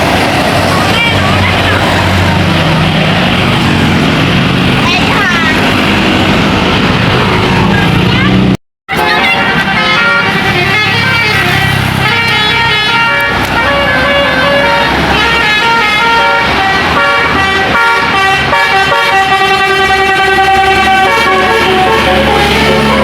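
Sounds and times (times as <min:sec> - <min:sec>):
bus engine running: 0:00.0 - 0:23.0
multi-tone bus horn tune: 0:08.3 - 0:23.0.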